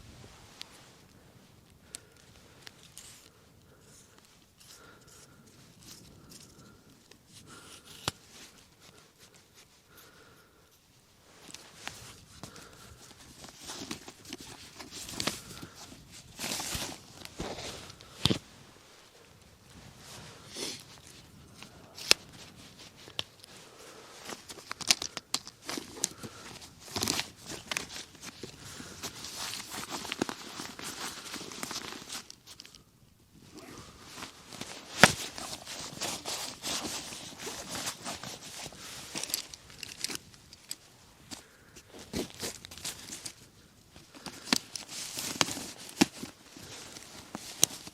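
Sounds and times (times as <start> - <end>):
gear rustling and scraping: 11.3 - 32.7, 33.4 - 47.9.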